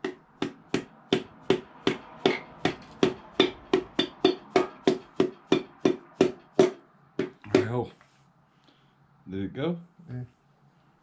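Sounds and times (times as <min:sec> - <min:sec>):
hammer tapping metal: 0:00.0 - 0:07.8.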